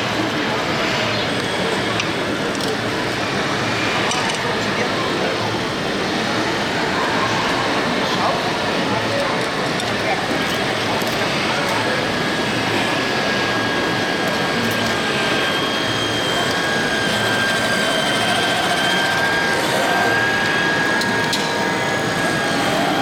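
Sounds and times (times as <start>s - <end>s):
crowd chatter in hall: 0.0s - 23.0s
high-pitched whine: 10.6s - 23.0s.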